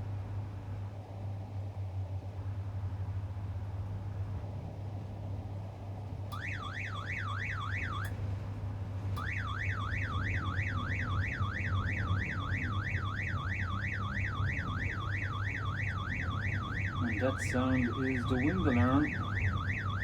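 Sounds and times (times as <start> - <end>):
steady low hum: 0.0 - 20.0
crane wind alarm sweeping tone: 6.3 - 8.2, 9.2 - 20.0.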